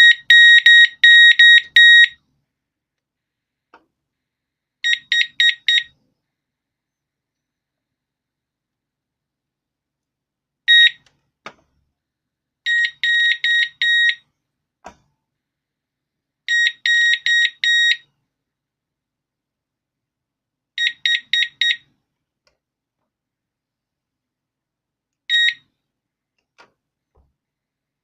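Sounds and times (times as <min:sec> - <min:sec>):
alarm siren high beeps: 0:00.0 - 0:02.2
click: 0:22.4 - 0:23.1, 0:26.4 - 0:26.8.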